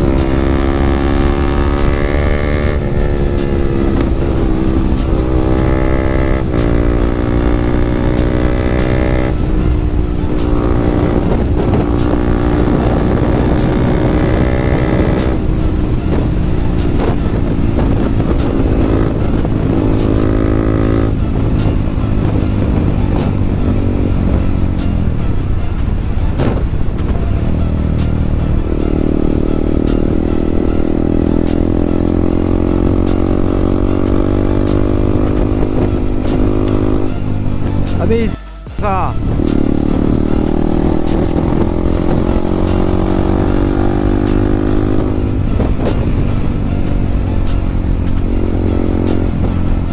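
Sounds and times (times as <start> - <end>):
motorcycle engine running hard: 0.0 - 49.9
wind rushing over microphone: 8.6 - 31.6, 32.5 - 38.2, 39.1 - 49.9.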